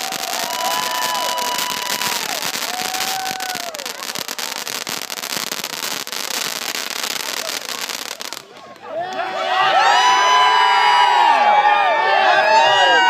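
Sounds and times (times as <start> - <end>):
fireworks crackling and popping: 0.0 - 9.3.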